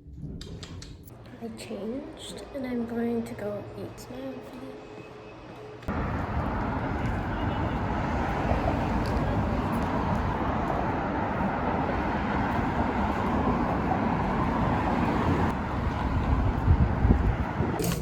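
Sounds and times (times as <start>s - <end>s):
road traffic rumble: 5.8s - 18.0s.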